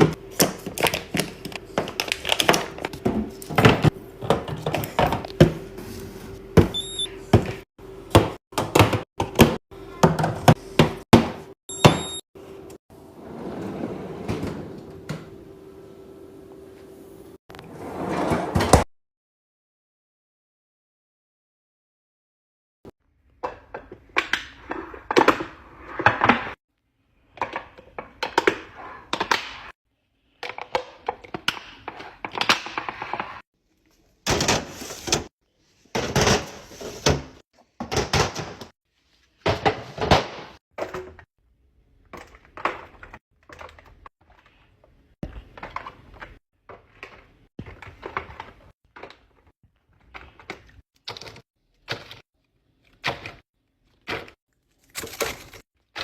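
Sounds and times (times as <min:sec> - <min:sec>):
knocks and clatter of containers: 0:35.9 - 0:38.8.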